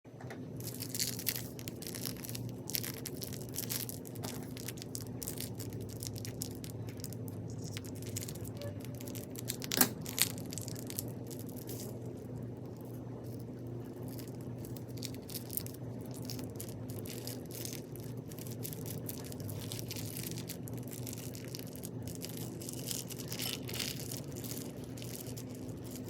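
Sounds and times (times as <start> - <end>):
faint steady hum: 0.1 - 26.0
crunchy slime crackling: 0.5 - 26.0.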